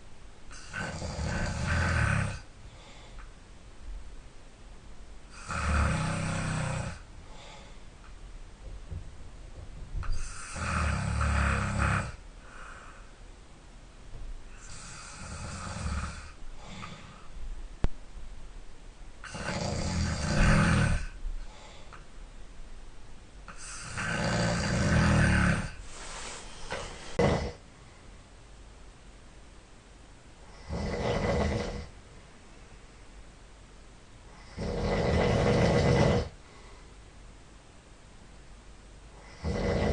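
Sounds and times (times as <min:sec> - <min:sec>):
person snoring: 0:00.5 - 0:02.5, 0:05.3 - 0:07.7, 0:10.0 - 0:13.0, 0:14.5 - 0:17.3, 0:19.2 - 0:21.2, 0:23.5 - 0:27.6, 0:30.5 - 0:31.9, 0:34.4 - 0:36.4, 0:39.2 - 0:39.9.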